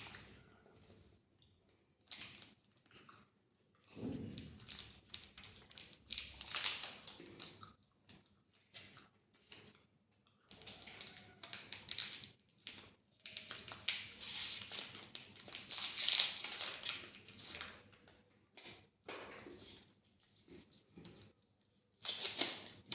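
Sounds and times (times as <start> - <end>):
crisp chewing and crunching: 4.6 - 9.8, 10.4 - 18.1.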